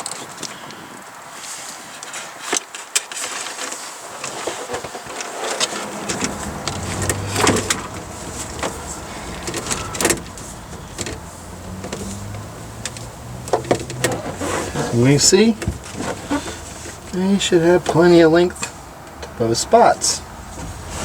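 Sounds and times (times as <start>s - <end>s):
cords being handled: 4.3s - 17.2s.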